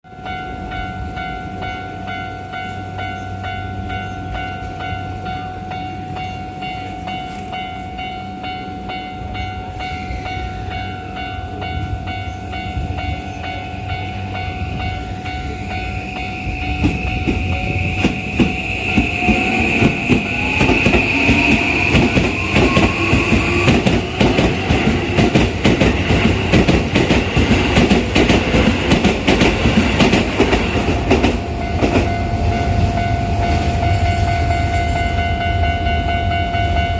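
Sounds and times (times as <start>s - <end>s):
level crossing bell ringing: 0.1s - 25.1s
train wheels clattering: 14.8s - 33.8s
train motors whining: 15.6s - 31.8s.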